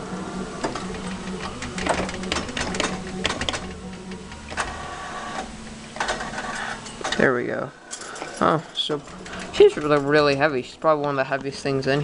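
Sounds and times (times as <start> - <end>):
claw machine motor humming: 0.0 - 7.3, 8.1 - 11.8
claw mechanism clicks and rattles: 0.6 - 4.8, 7.9 - 10.6.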